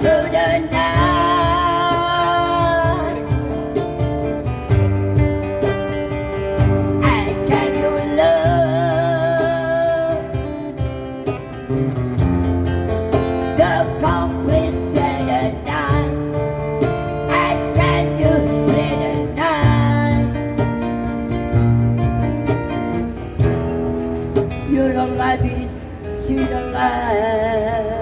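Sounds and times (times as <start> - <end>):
acoustic guitar strumming: 0.0 - 28.0
person singing: 7.0 - 10.5.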